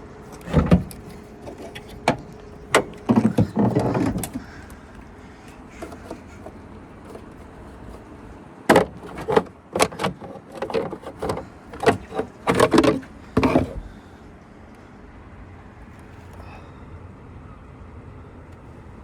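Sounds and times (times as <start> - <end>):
latches and parts clunking: 0.2 - 14.0.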